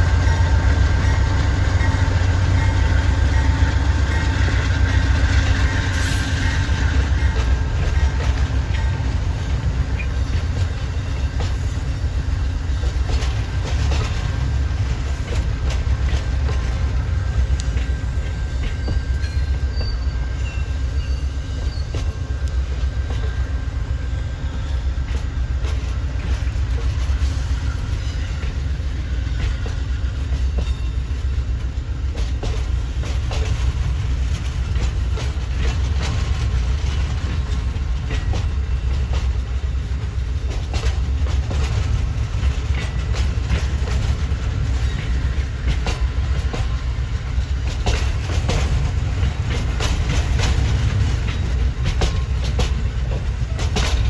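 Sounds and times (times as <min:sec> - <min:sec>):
train wheels rumbling on rail: 0:00.0 - 0:54.0
faint wheel squeal: 0:18.4 - 0:22.2.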